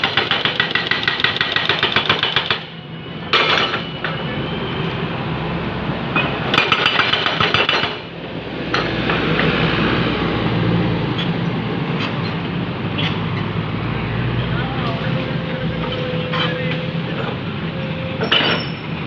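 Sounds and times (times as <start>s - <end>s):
hydraulic breaker hammering: 0.0s - 3.9s, 6.2s - 8.1s.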